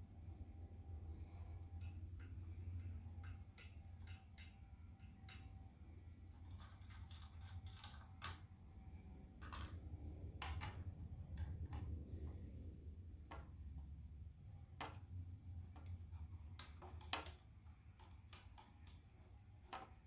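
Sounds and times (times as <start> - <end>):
screwdriver clicks and metallic taps: 1.8 - 5.6, 6.4 - 8.4, 9.4 - 9.8, 15.7 - 19.0.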